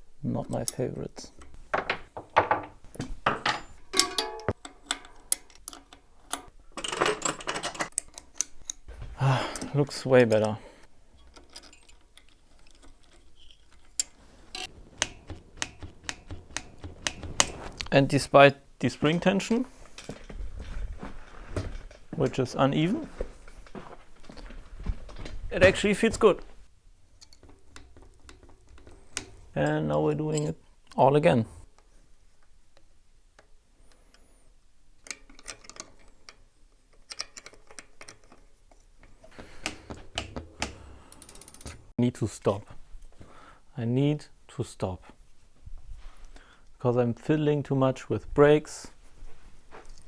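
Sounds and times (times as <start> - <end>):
metallic tool clicks and taps: 14.0 - 17.8.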